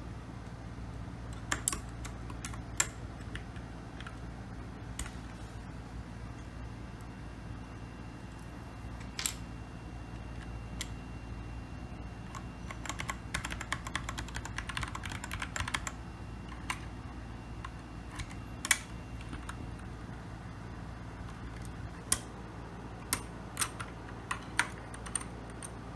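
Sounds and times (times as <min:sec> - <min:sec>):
mechanical keyboard typing: 0:01.3 - 0:04.2, 0:12.3 - 0:16.9, 0:17.6 - 0:19.9, 0:23.0 - 0:25.8.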